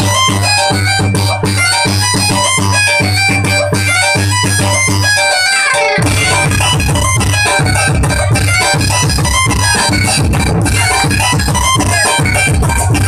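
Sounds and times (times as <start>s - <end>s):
dance music with pumping bass: 0.0s - 13.0s
fiddle-like lead melody: 0.0s - 13.0s.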